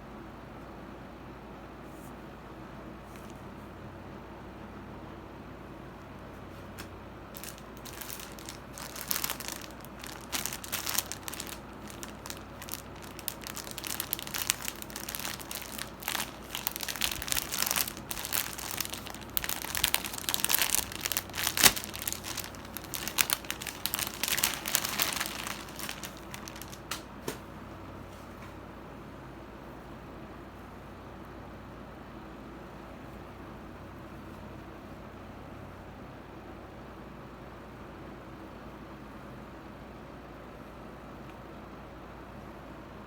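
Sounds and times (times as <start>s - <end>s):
faint low hum: 0.0s - 43.0s
packaging crinkling: 6.6s - 27.4s.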